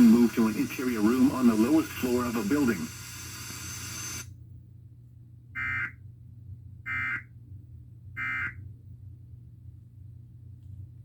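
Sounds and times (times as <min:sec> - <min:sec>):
digital data screech bursts: 0:00.0 - 0:04.2.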